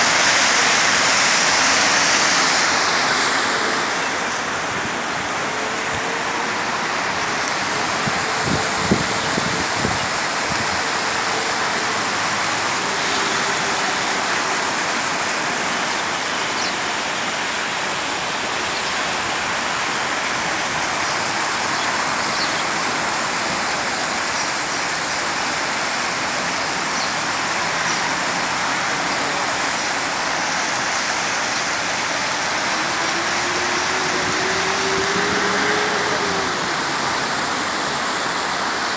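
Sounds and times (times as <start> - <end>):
rushing water: 0.0 - 38.9.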